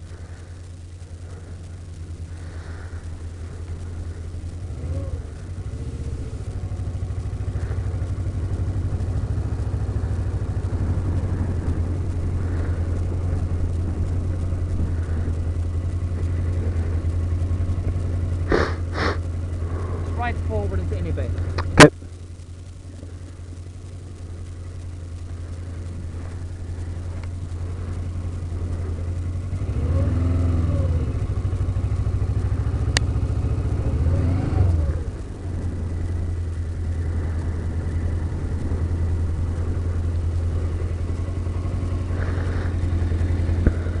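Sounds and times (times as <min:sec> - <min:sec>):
motorcycle engine revving: 0:00.0 - 0:44.0.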